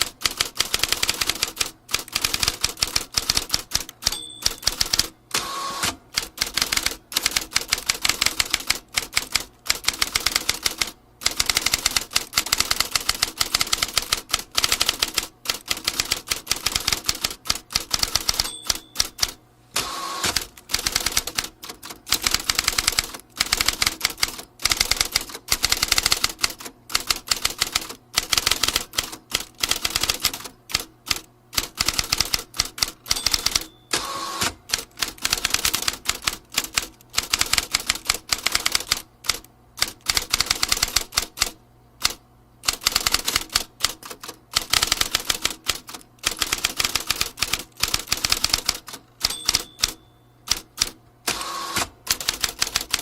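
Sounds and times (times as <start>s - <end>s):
typewriter key strikes: 0.0s - 5.1s, 6.2s - 19.4s, 20.3s - 41.4s, 42.0s - 53.0s
typewriter bell ring: 4.0s - 5.1s, 17.8s - 19.4s, 32.8s - 35.0s, 49.2s - 50.7s.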